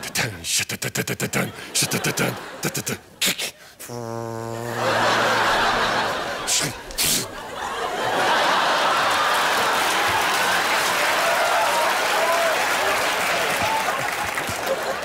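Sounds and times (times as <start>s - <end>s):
studio audience laughing: 1.3s - 3.2s, 4.0s - 11.3s, 14.3s - 15.0s
person making war sound effects: 1.8s - 7.4s.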